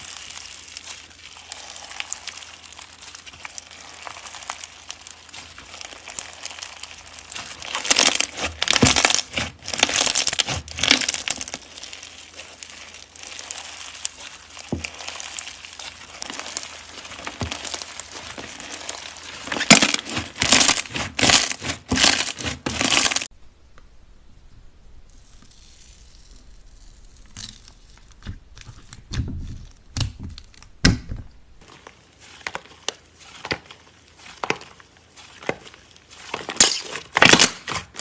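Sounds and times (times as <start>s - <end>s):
slime crackling when squeezed: 0.0s - 23.1s.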